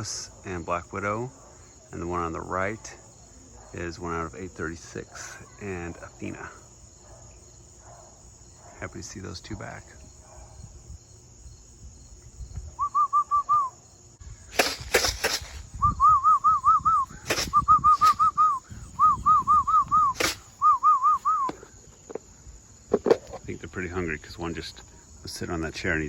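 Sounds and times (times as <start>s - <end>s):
person whistling: 12.8s - 13.7s, 15.8s - 21.6s
brief noisy bursts: 14.5s - 18.6s, 19.5s - 21.6s.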